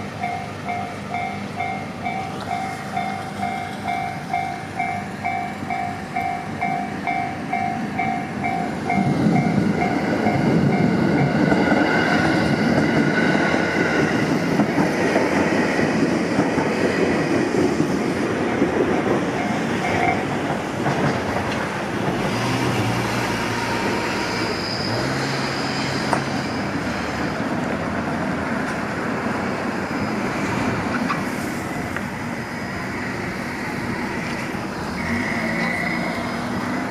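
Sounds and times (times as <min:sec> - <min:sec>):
level crossing warning bell: 0:00.0 - 0:11.4, 0:18.4 - 0:20.5
train wheels rumbling over rails: 0:00.0 - 0:36.9.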